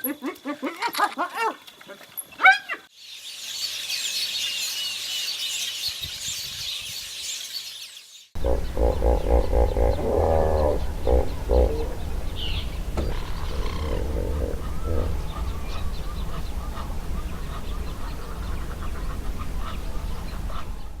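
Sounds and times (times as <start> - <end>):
birds chirping and twittering: 1.8 - 21.0
birds cackling calls: 8.4 - 21.0
low rumble: 8.4 - 21.0.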